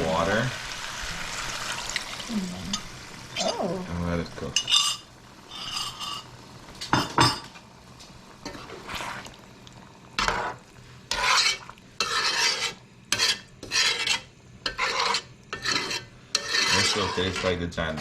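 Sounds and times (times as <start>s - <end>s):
faint sizzle: 0.0s - 18.0s
utensil scraping a pot: 4.5s - 6.4s, 8.4s - 9.4s, 10.2s - 18.0s.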